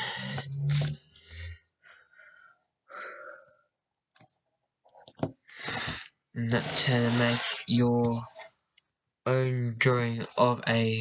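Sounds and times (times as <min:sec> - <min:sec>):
breathing close to microphone: 0:00.0 - 0:03.6, 0:05.4 - 0:07.7.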